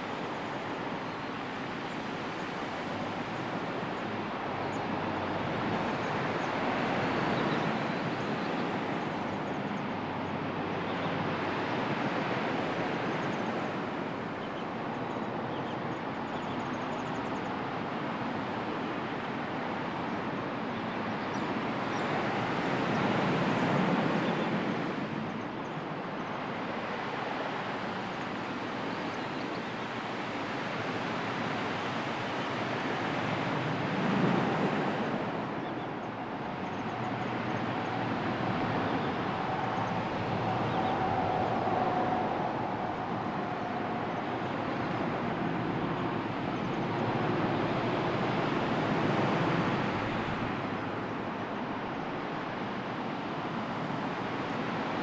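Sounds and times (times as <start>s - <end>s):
sea waves washing onto shore: 21.5s - 55.0s.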